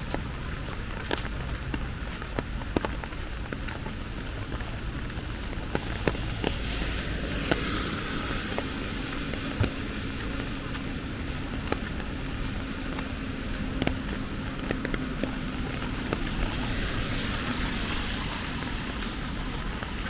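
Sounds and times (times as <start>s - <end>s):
raindrops ticking close by: 0.0s - 20.0s
steady rain falling: 0.0s - 20.0s
vehicle tyres hissing on wet road: 0.0s - 20.0s.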